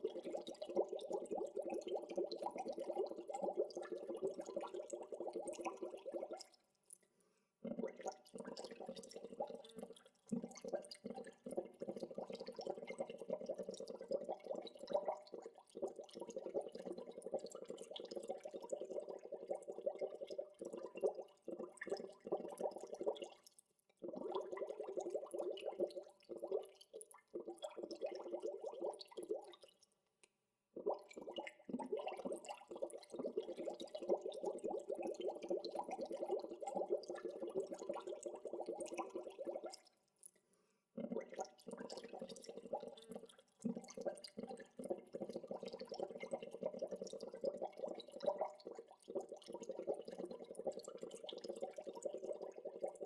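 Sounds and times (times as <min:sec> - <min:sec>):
water bubbling: 0:30.8 - 0:39.8.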